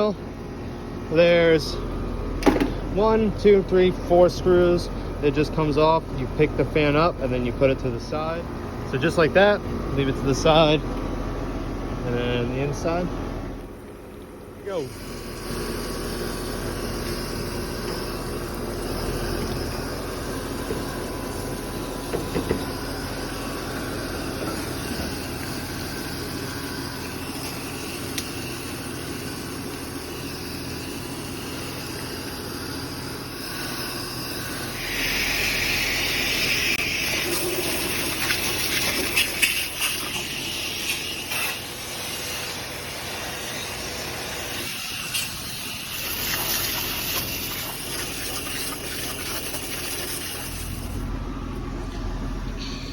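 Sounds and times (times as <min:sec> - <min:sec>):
water spraying on metal coil: 0:24.2 - 0:51.0.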